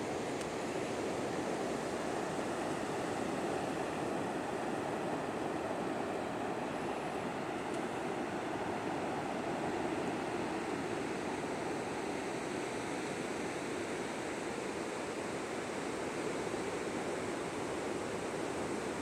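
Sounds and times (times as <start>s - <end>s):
ocean surf breaking on beach: 0.0s - 13.1s.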